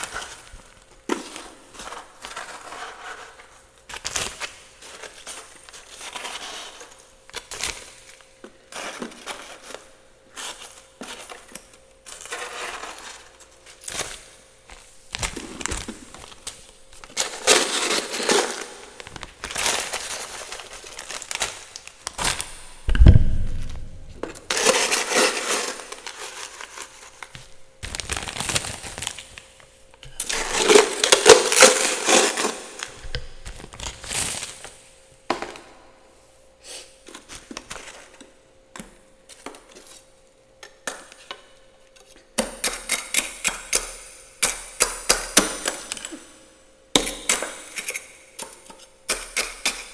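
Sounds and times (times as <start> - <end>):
ice chunks clinking and cracking: 17.1 - 22.5, 24.5 - 29.4, 30.2 - 33.0
ice being scraped: 17.2 - 21.4, 24.5 - 27.2, 30.2 - 33.0
heavy thud: 22.8 - 24.3.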